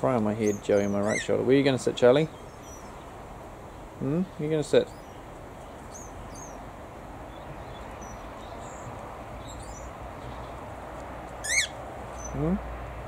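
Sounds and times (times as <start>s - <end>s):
birds chirping: 0.0s - 12.7s
steady background hiss: 0.0s - 13.0s
bird call with falling sweeps: 11.4s - 12.5s.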